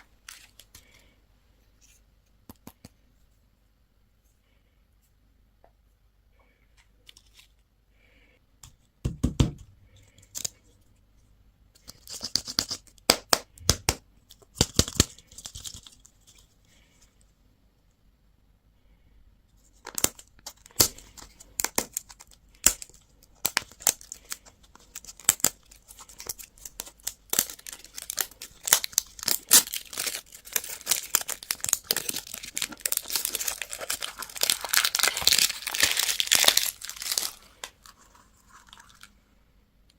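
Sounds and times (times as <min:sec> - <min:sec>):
plastic wrapper crinkling and tearing: 0:00.0 - 0:01.0, 0:19.8 - 0:39.2.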